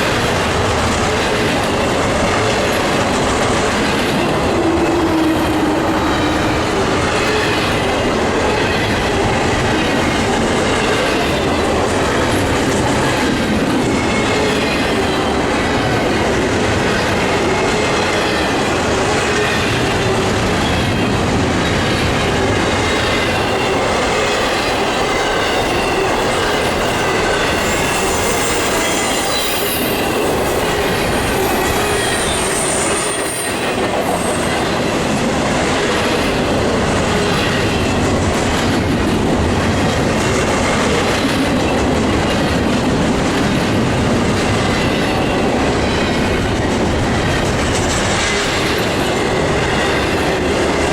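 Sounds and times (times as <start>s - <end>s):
freight train rolling past: 0.0s - 50.9s
high wheel squeal: 19.3s - 34.8s.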